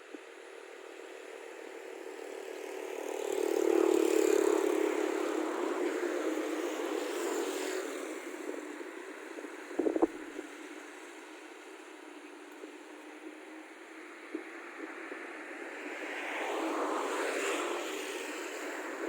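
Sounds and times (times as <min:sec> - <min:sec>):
vehicle engine passing by: 0:02.1 - 0:08.7.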